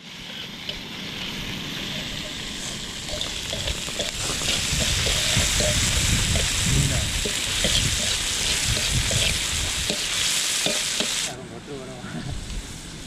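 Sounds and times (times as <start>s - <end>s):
food frying in hot oil: 0.0s - 11.4s.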